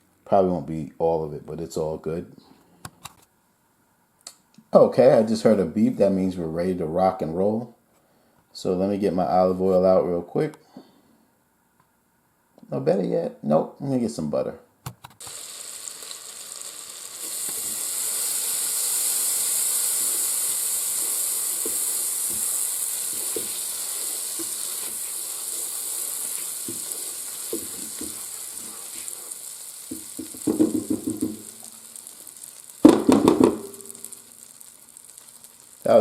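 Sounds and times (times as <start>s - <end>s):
butter sizzling in a pot: 15.2s - 36.0s.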